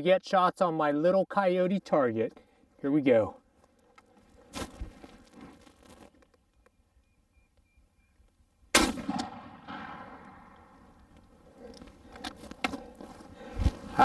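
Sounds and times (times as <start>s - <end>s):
shotgun shot: 8.7s - 10.6s.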